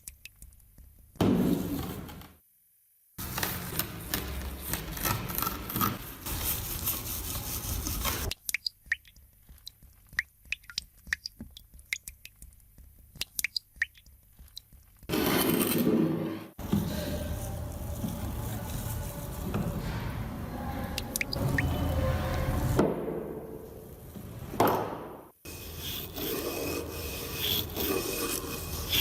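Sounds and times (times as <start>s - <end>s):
scrubbing scrape on metal: 25.5s - 29.0s.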